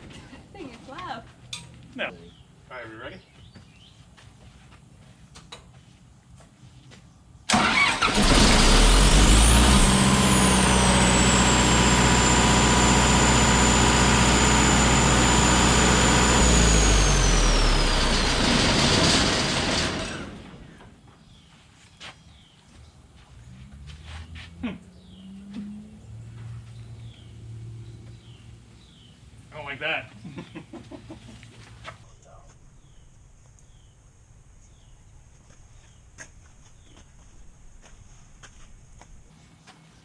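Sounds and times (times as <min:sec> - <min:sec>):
diesel generator engine running: 0:07.5 - 0:21.0.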